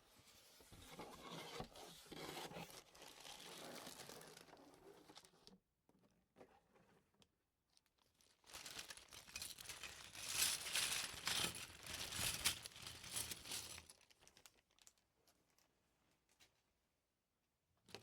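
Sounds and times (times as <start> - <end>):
plastic bag crinkling: 8.2 - 15.0.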